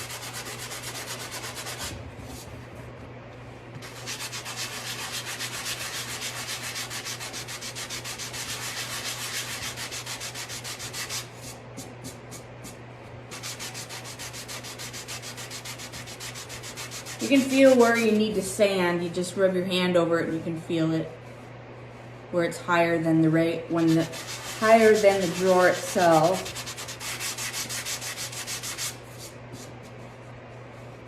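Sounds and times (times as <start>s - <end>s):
sanding block scratching wood: 0.0s - 2.0s, 3.8s - 12.4s, 13.3s - 18.2s, 23.7s - 29.8s.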